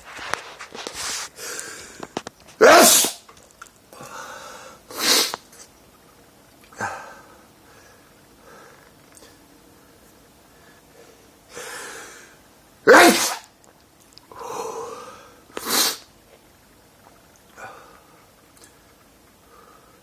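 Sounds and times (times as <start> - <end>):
man sneezing: 2.6 - 3.2, 4.9 - 5.4, 12.9 - 13.5, 15.6 - 16.0.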